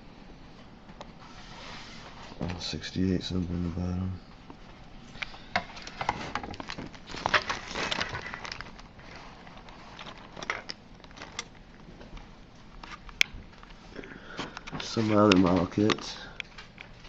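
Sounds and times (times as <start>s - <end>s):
plastic box clicks and rustling: 5.9s - 8.8s.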